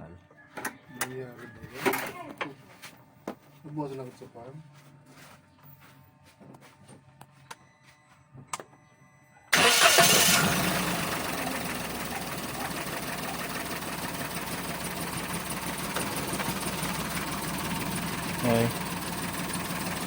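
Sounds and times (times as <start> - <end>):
car engine starting and idling: 9.5 - 20.0.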